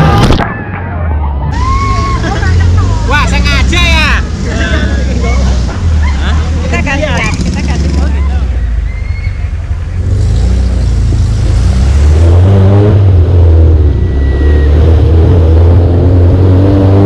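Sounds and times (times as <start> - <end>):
off-road engine revving under load: 1.9 - 17.0.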